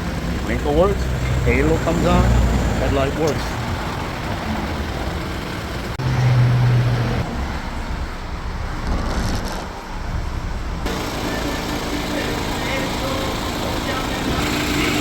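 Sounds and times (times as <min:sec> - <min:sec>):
car engine idling: 0:00.0 - 0:06.1, 0:10.8 - 0:15.0.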